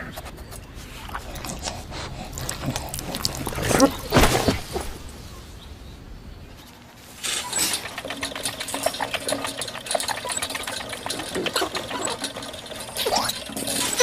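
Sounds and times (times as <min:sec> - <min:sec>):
rapid mechanical clicking: 0:07.2 - 0:14.0.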